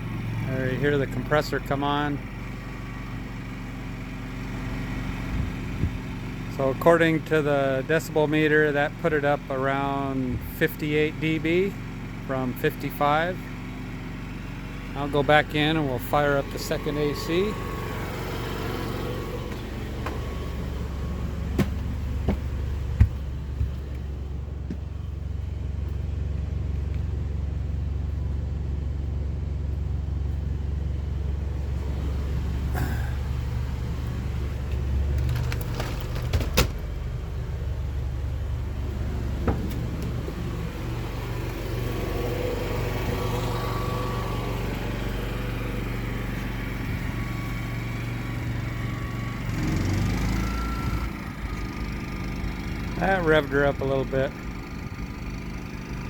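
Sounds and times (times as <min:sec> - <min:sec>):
generator engine running: 0:00.0 - 0:56.0
sharp knocks: 0:21.6 - 0:23.7.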